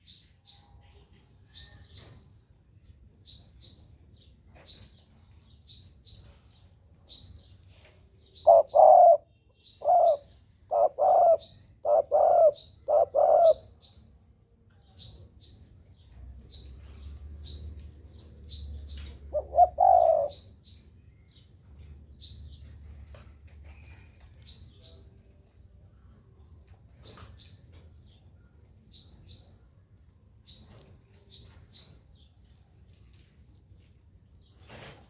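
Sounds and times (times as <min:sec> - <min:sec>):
dove cooing: 0:08.4 - 0:13.7, 0:18.8 - 0:20.5.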